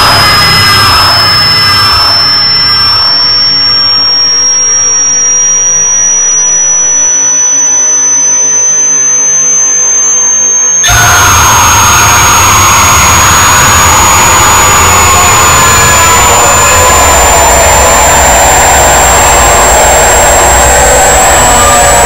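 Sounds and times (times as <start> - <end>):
harsh rushing noise: 0.0 - 3.3, 10.8 - 22.0
droning steady tones: 0.0 - 22.0
piercing high-pitched tone: 0.0 - 22.0.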